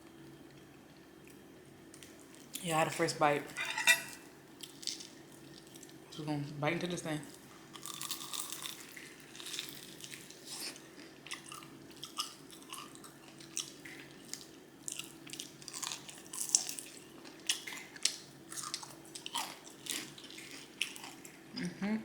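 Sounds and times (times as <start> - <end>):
crunching fried chicken: 4.2 - 6.0, 7.3 - 21.4
chewing: 7.3 - 21.4.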